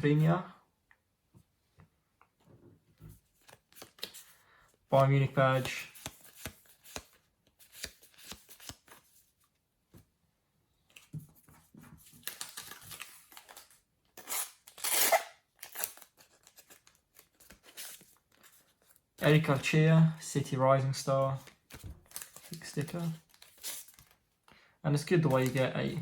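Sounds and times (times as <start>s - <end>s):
paper stickers rustling: 5.4s - 9.2s, 21.3s - 24.2s, 25.2s - 26.0s.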